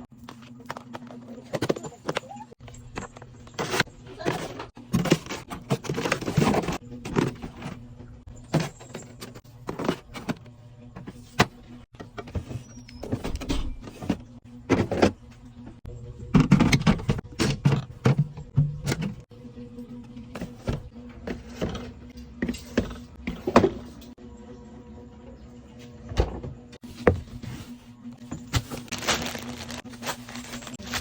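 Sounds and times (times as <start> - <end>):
packaging rustling: 28.5 - 31.0.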